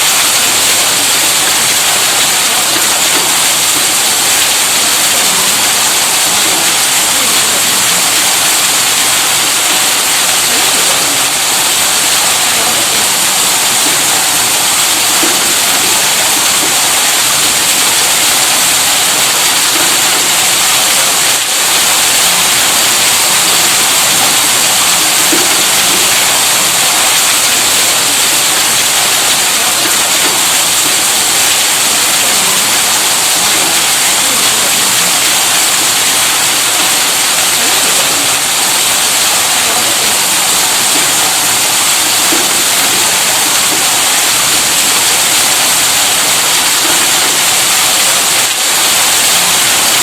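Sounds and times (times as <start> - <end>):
water gushing from pump outlet: 0.0 - 50.0.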